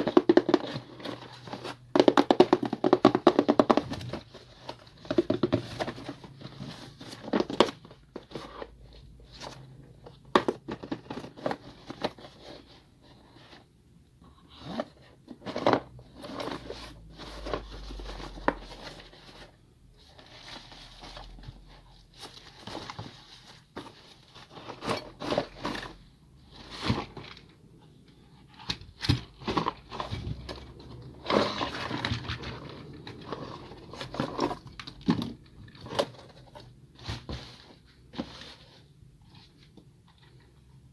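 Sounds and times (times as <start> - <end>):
packaging crinkling and rustling: 0.0 - 13.7, 14.5 - 40.9.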